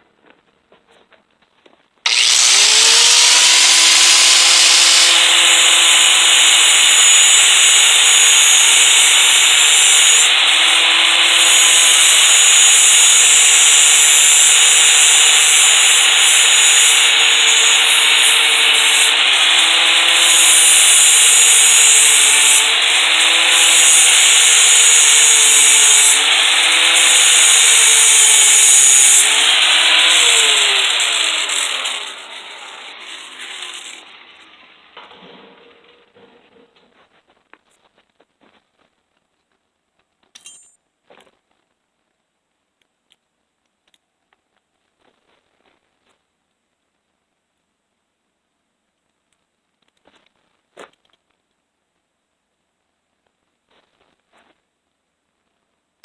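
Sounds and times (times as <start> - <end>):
electric grinder grinding metal: 2.1 - 36.2.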